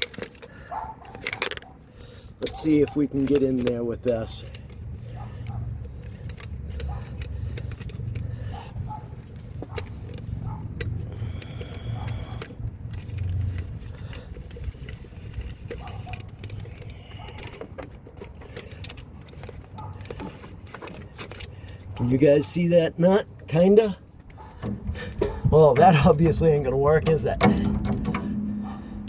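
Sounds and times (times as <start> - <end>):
hand tool clicking on nut: 0.0 - 22.0.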